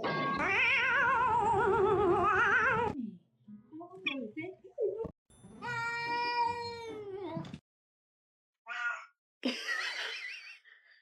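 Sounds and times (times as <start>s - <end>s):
cat meowing: 0.1s - 3.0s.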